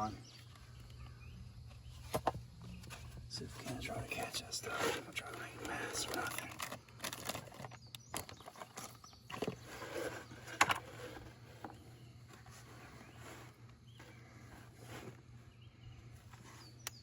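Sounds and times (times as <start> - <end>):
faint bird chirps: 7.4 - 17.0.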